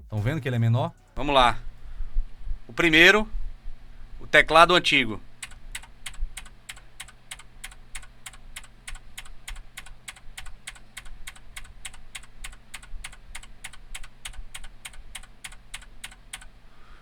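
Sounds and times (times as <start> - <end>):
clicky mechanical keyboard typing: 5.4 - 16.5.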